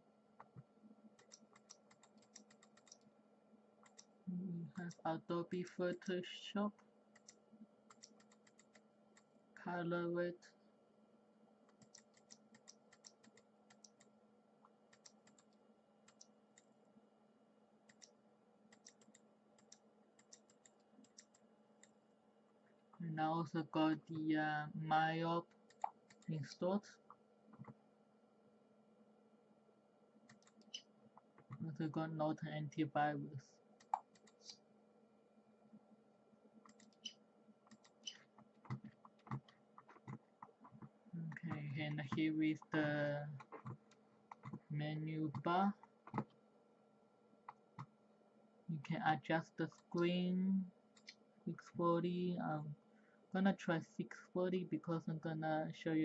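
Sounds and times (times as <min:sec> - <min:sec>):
faint steady hum: 0:00.0 - 0:56.0
keyboard and mouse clicking: 0:00.4 - 0:03.1, 0:03.8 - 0:04.1, 0:07.1 - 0:09.3, 0:11.7 - 0:14.1, 0:14.9 - 0:16.7, 0:17.9 - 0:22.0, 0:25.5 - 0:26.3, 0:30.3 - 0:31.6, 0:33.8 - 0:34.6, 0:36.6 - 0:42.3.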